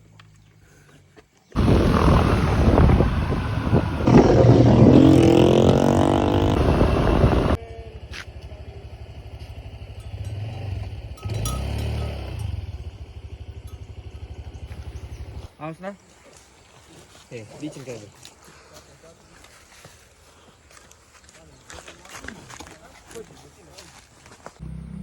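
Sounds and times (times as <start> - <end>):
motorcycle engine revving: 1.6 - 15.5, 24.6 - 25.0.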